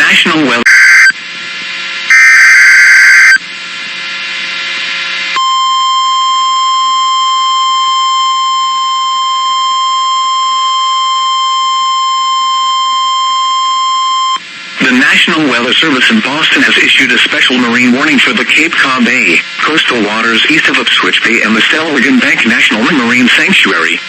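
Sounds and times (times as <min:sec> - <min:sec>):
radio hiss: 0:00.0 - 0:01.2, 0:14.5 - 0:24.0
digital data screech: 0:00.7 - 0:01.2, 0:02.1 - 0:03.4
steady buzzy alarm tone: 0:00.7 - 0:01.2, 0:02.1 - 0:03.4, 0:05.4 - 0:14.4.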